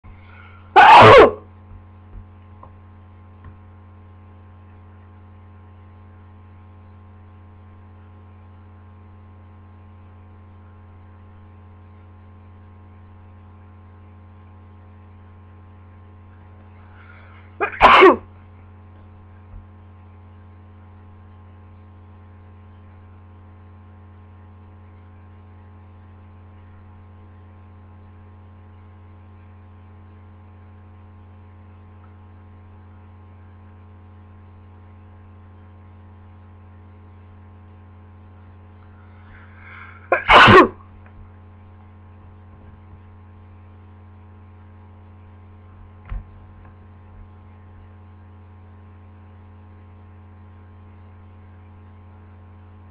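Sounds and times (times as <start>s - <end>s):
steady electrical hum: 0.1s - 52.9s
loud sneeze: 0.4s - 1.5s, 17.6s - 18.3s, 39.6s - 40.9s
drawn-in breath: 38.9s - 40.1s.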